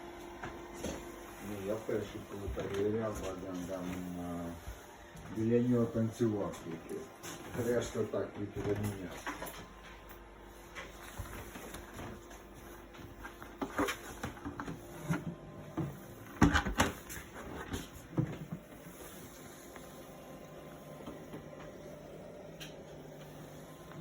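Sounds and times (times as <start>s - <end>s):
plastic fridge being handled: 11.2s - 18.8s
fridge lid opening and shutting: 16.3s - 17.1s.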